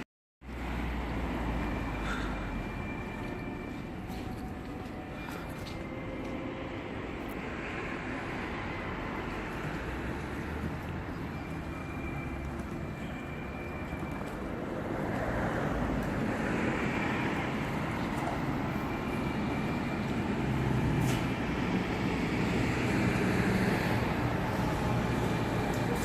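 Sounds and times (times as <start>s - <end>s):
road traffic noise: 0.0s - 26.0s.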